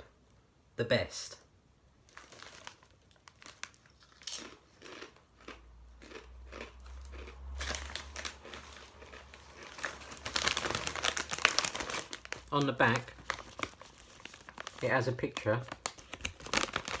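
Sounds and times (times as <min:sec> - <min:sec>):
crisp packet crinkling: 0:02.0 - 0:17.0
chips crunching: 0:02.1 - 0:17.0.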